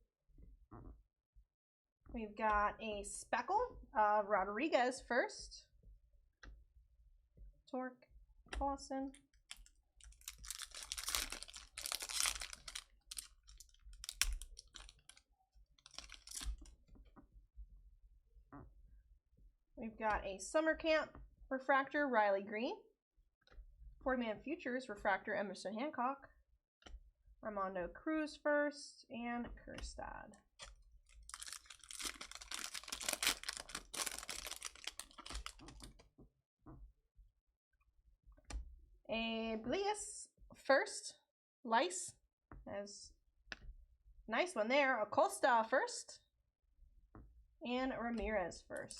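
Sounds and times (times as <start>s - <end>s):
cards and foil pack crinkling: 9.5s - 15.2s, 15.8s - 16.7s, 30.6s - 36.0s.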